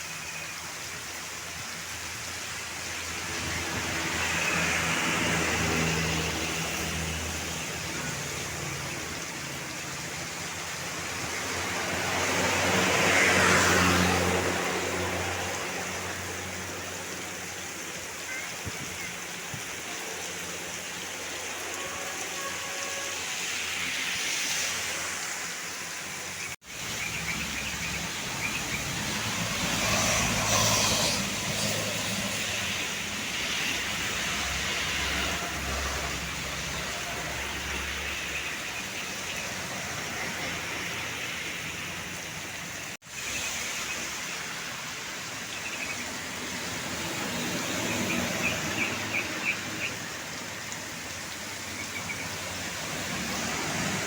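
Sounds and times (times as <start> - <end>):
roadside traffic: 0.0 - 54.0.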